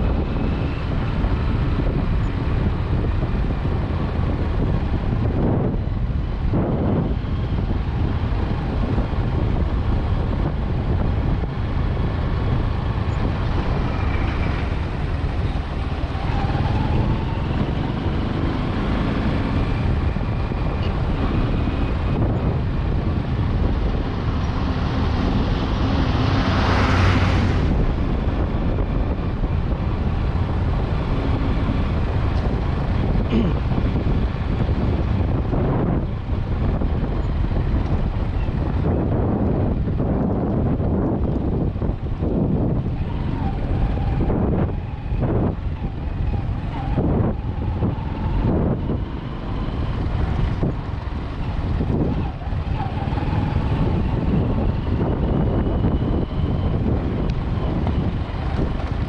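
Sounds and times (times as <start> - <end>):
vehicle and road noise: 0.0 - 59.0
wind on microphone: 0.0 - 59.0
vehicle passing close by: 23.6 - 29.1.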